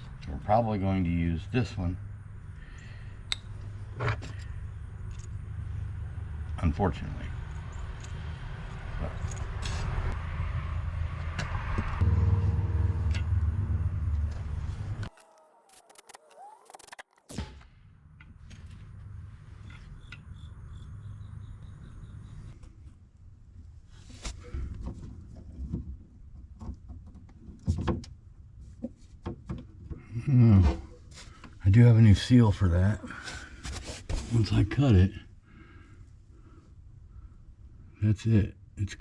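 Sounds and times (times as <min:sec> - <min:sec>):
vehicle engine rumbling: 0:00.0 - 0:17.2, 0:17.8 - 0:27.5.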